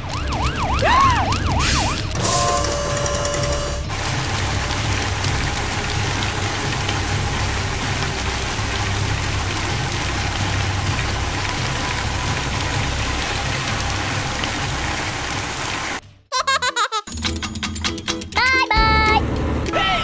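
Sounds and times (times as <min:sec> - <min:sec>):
rain-like hiss: 0:03.9 - 0:16.0.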